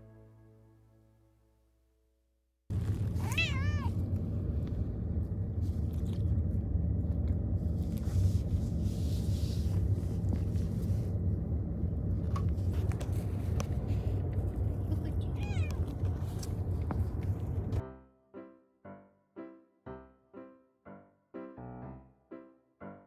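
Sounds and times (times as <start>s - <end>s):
steady low hum: 2.7s - 17.8s
cat meowing: 3.2s - 4.0s, 15.2s - 16.0s.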